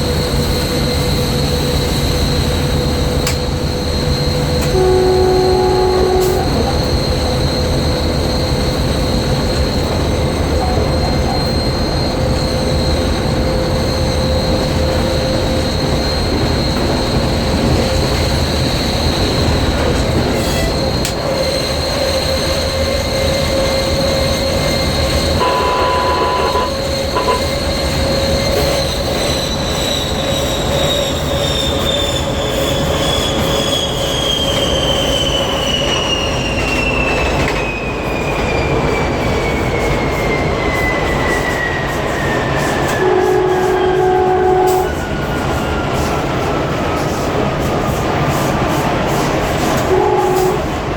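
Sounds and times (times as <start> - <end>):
wheel and rail rumble: 0.0 - 50.9
turbocharger high whistle: 3.6 - 9.2, 24.0 - 38.8.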